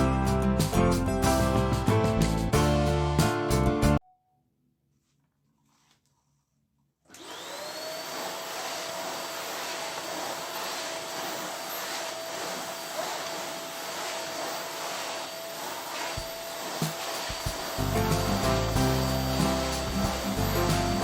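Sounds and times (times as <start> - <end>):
vacuum cleaner motor whine: 7.1 - 21.0.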